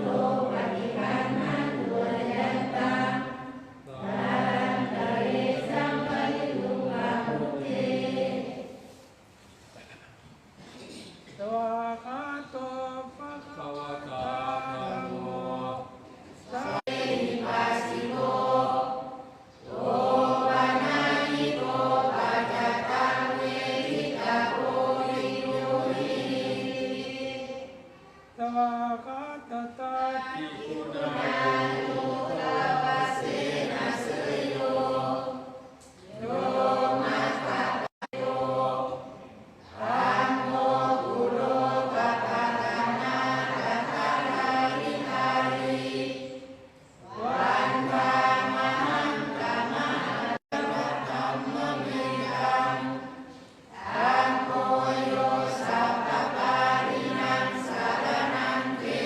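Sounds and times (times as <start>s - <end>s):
group chanting in unison: 0.0s - 9.1s, 11.4s - 59.0s.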